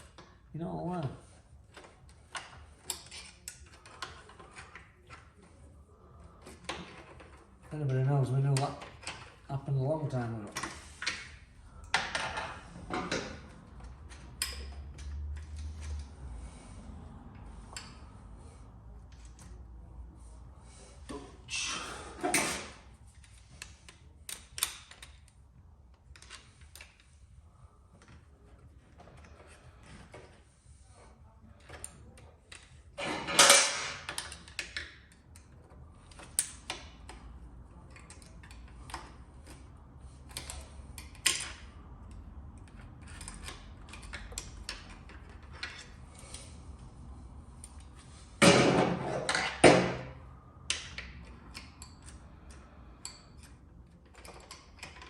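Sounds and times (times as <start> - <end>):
metal parts clattering: 33.0 - 34.5
hand tools clicking and tapping: 50.7 - 55.0.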